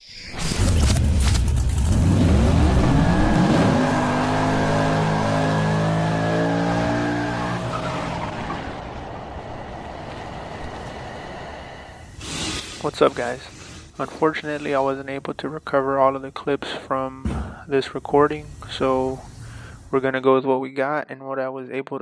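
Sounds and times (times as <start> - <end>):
car engine revving: 0.5 - 12.1.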